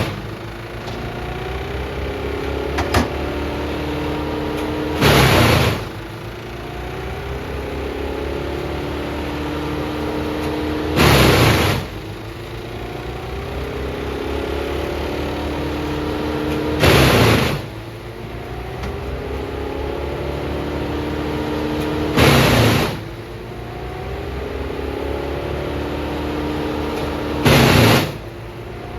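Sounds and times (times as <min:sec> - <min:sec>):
diesel engine running: 0:00.0 - 0:28.9
loud rushing bursts: 0:05.0 - 0:06.0, 0:10.8 - 0:12.1, 0:16.8 - 0:17.8, 0:22.1 - 0:23.1, 0:27.4 - 0:28.2.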